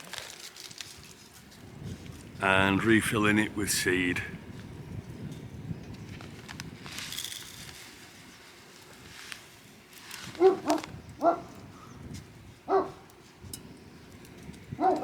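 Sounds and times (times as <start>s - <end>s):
dog barking: 10.4s - 11.5s, 12.7s - 13.0s, 14.8s - 15.0s.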